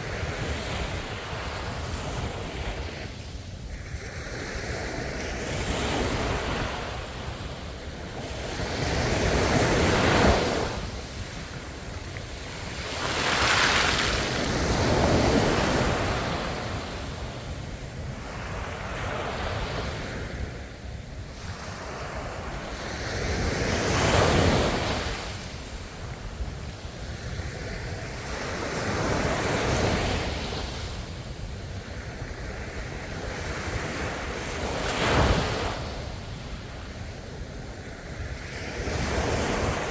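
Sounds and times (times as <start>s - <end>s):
wind: 0.0s - 39.9s
ocean waves breaking: 8.2s - 17.3s.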